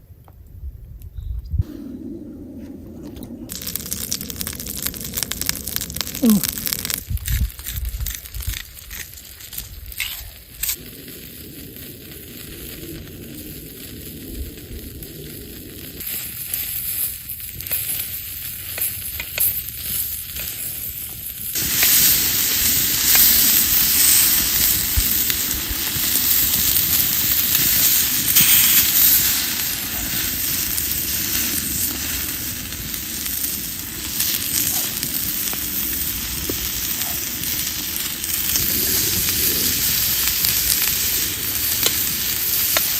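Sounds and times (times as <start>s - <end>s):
fat popping: 3.0s - 10.8s
meat sizzling in a pan: 3.5s - 42.9s.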